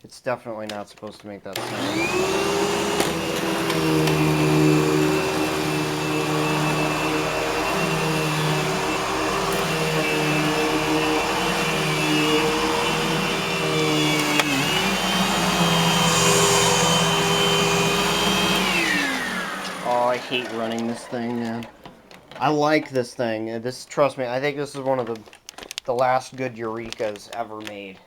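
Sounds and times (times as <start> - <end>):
vacuum cleaner click: 0.6 - 23.0
vacuum cleaner motor whine: 1.6 - 22.9.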